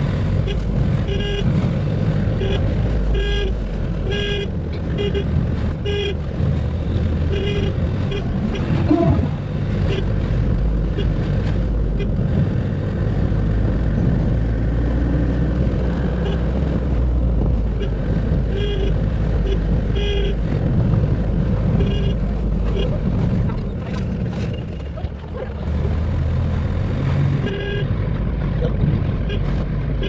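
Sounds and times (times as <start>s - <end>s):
vehicle engine rumbling: 0.0s - 30.0s
short horn toots: 7.3s - 10.1s.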